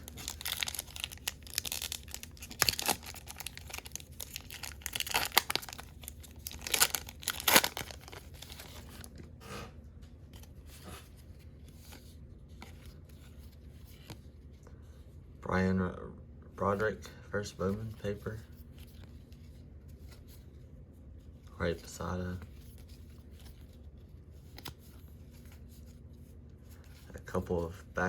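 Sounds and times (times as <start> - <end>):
wrapper tearing and crinkling: 0.0 - 8.9.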